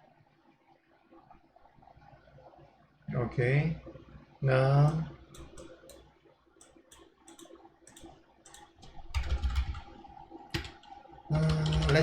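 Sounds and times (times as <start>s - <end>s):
computer keyboard typing: 6.9s - 9.9s, 10.5s - 12.0s.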